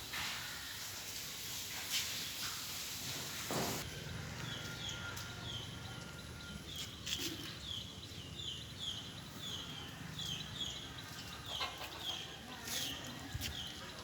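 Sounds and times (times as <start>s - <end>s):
bird chirping: 4.4s - 13.9s.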